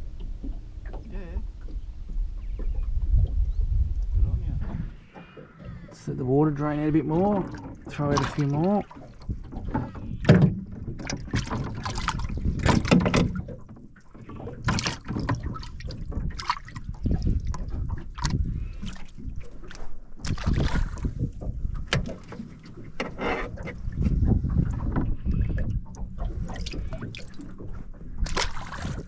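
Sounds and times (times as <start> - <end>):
low rumble of wind and water: 0.0 - 29.0
fishing gear knocking and rattling: 9.0 - 18.5.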